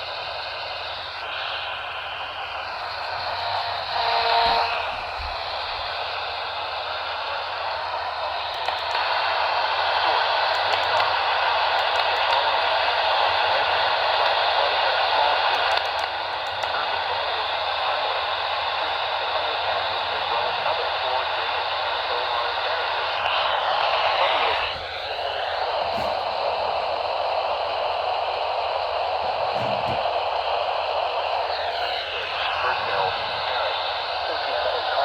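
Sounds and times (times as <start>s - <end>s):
radio static hiss: 0.0s - 35.0s.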